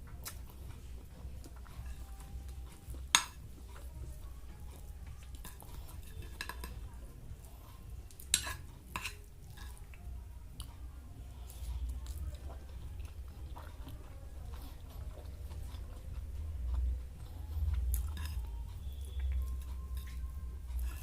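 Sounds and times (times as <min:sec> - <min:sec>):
cutlery clinking against a plate: 0:01.7 - 0:03.8, 0:05.3 - 0:06.8, 0:08.1 - 0:10.0, 0:17.9 - 0:18.5.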